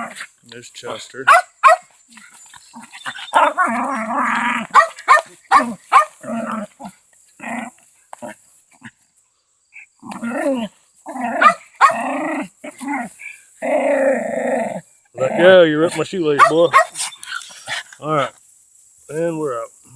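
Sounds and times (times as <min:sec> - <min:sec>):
dog growling: 0:00.0 - 0:00.3, 0:02.1 - 0:09.0, 0:10.0 - 0:18.4
dog barking: 0:01.2 - 0:01.9, 0:04.6 - 0:06.2, 0:11.3 - 0:12.0, 0:16.4 - 0:17.2.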